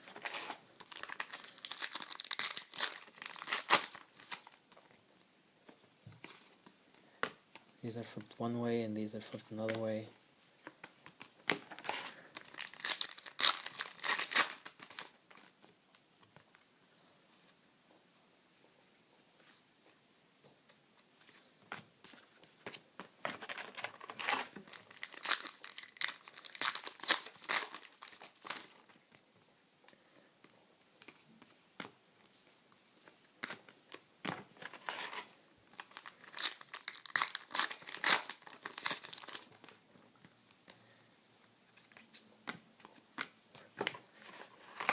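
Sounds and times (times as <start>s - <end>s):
cards rustling: 0.0s - 4.6s, 9.2s - 15.5s, 21.2s - 29.0s, 30.9s - 44.9s
wrappers tearing and crinkling: 0.2s - 4.4s, 11.8s - 15.2s, 23.5s - 28.7s, 34.8s - 39.6s.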